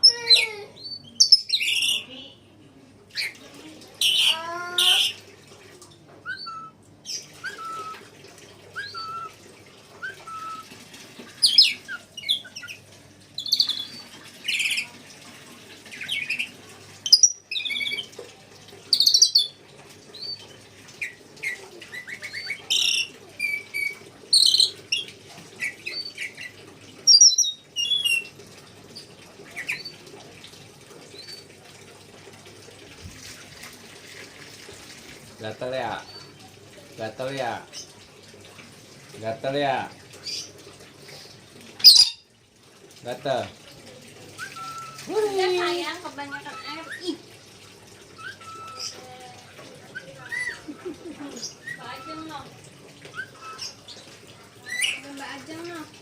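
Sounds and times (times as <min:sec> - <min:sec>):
parrot chirping and whistling: 0:04.0 - 0:05.2, 0:06.2 - 0:08.0, 0:08.7 - 0:09.4, 0:10.0 - 0:10.7, 0:11.4 - 0:12.8, 0:13.4 - 0:14.8, 0:17.0 - 0:18.0, 0:21.9 - 0:26.3, 0:27.1 - 0:28.3, 0:41.8 - 0:42.3, 0:44.4 - 0:45.1, 0:48.2 - 0:49.0, 0:49.9 - 0:50.7, 0:53.1 - 0:53.8.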